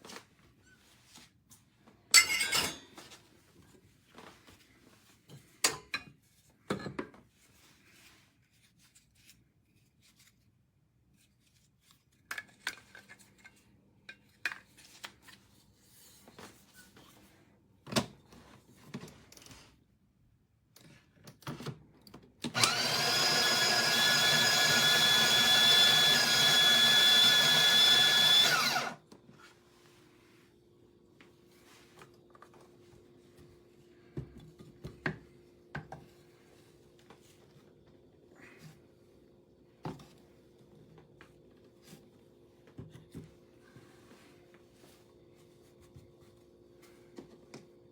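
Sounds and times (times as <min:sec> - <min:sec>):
burr grinder motor whining: 0:22.5 - 0:29.0.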